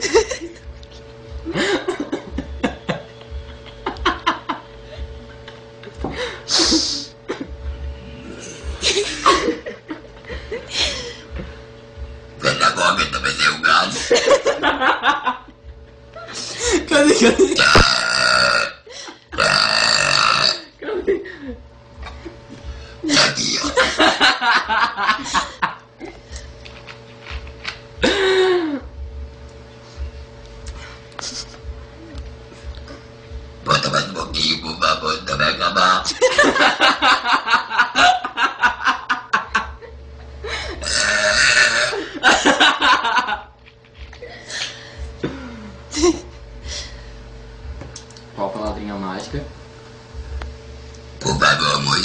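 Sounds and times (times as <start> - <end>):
people laughing: 0.0 - 0.7, 1.4 - 7.6, 8.6 - 11.3, 13.9 - 17.6, 20.8 - 28.8, 36.0 - 40.8, 41.8 - 46.4
girl burping: 17.6 - 18.8, 19.4 - 20.7, 23.1 - 23.8, 40.8 - 42.0.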